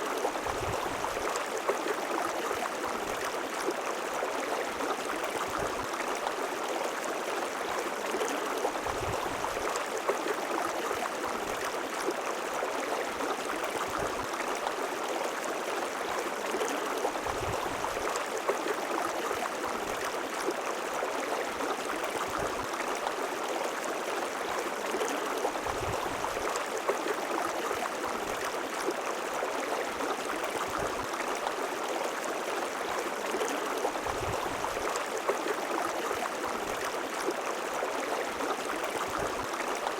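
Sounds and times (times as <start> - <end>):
river water babbling over rocks: 0.0 - 39.9
small water splashes: 0.0 - 39.9.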